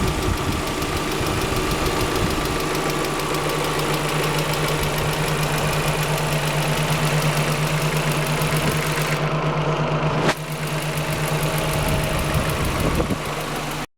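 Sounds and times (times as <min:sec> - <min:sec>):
fast knocking tick: 0:00.0 - 0:08.9
car engine running: 0:00.0 - 0:13.9.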